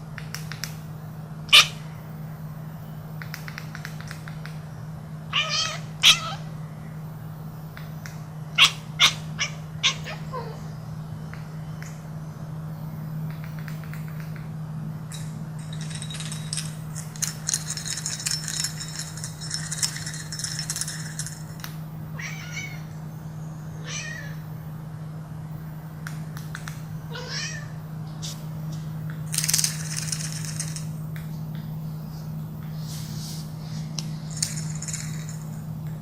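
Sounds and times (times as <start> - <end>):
steady low hum: 0.0 - 36.0
cat meowing: 5.3 - 6.4, 8.6 - 10.6, 22.2 - 22.9, 23.8 - 24.4, 27.1 - 27.8
clicking and rattling: 15.1 - 21.8, 29.3 - 31.0, 34.0 - 36.0.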